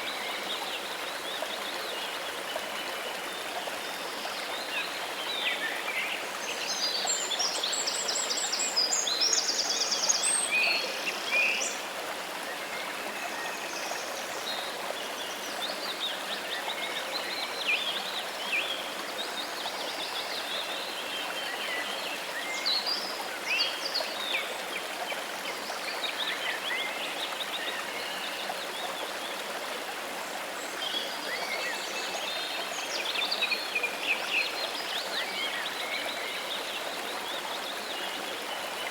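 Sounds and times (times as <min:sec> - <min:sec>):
flowing water: 0:00.0 - 0:38.9.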